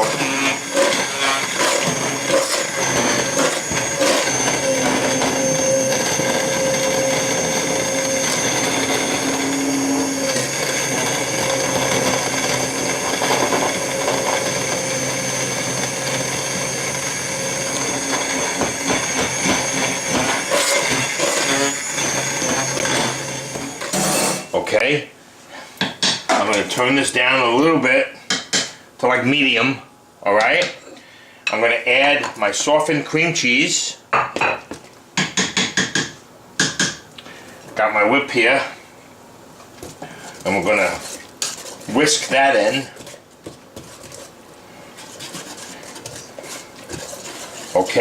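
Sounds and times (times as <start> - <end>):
immersion blender running: 0.0 - 24.4.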